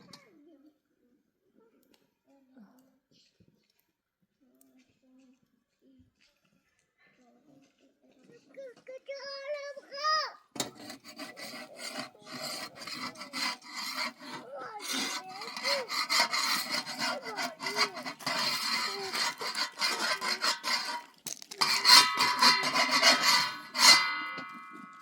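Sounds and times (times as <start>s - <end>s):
rasping scraping strokes: 10.6s - 25.0s.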